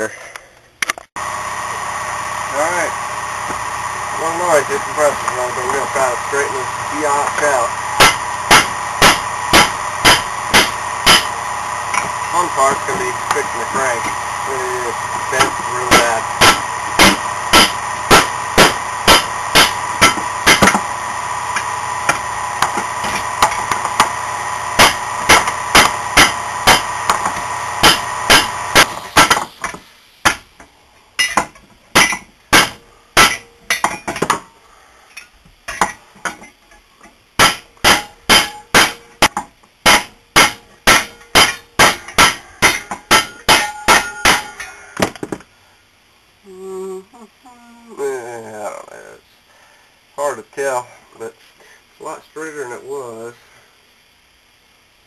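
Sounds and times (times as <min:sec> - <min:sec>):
steady hum: 0:00.0 - 0:55.0
hammer striking metal crank: 0:08.0 - 0:12.1, 0:15.4 - 0:20.8, 0:24.8 - 0:29.5, 0:31.2 - 0:34.4, 0:37.4 - 0:44.7.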